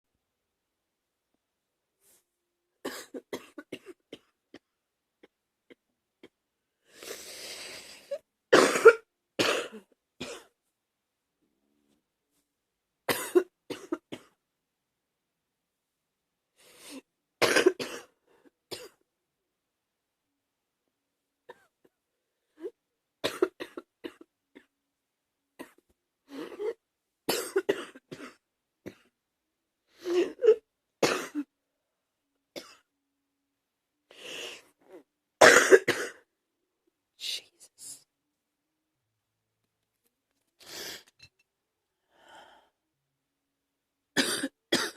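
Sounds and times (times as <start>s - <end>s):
drawn-in breath: 6.8s - 8.2s
person coughing: 8.6s - 10.5s, 13.1s - 14.4s, 17.4s - 19.0s, 23.2s - 24.3s, 26.4s - 29.0s, 30.1s - 31.5s, 35.4s - 36.3s, 44.2s - 44.9s.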